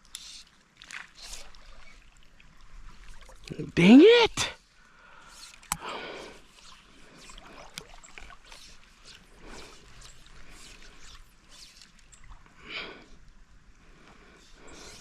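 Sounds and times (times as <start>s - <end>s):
small water splashes: 0.0s - 3.8s, 6.6s - 12.5s
river water sloshing and trickling: 0.0s - 15.0s.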